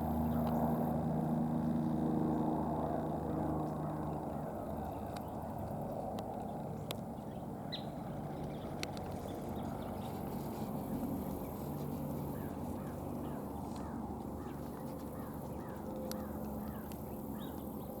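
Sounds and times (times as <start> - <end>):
flycatchers calling: 7.2 - 18.0.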